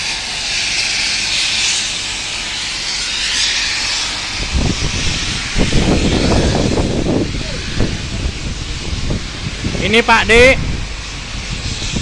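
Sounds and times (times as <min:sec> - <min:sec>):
loud steady hissing: 0:00.0 - 0:12.0
rough choppy low rumble: 0:03.9 - 0:12.0.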